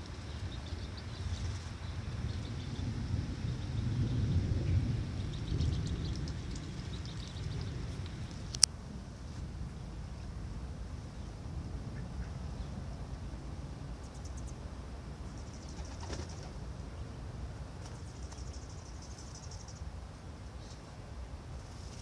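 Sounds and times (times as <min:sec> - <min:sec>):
birds chirping: 0:00.0 - 0:08.7, 0:11.0 - 0:21.0
low rumble: 0:00.0 - 0:15.6.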